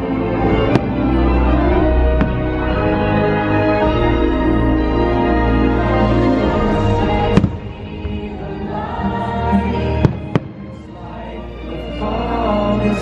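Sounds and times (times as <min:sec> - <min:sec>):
orchestral music with choir: 0:00.0 - 0:13.0
firework bangs: 0:00.5 - 0:02.9, 0:07.2 - 0:08.4, 0:09.9 - 0:10.8.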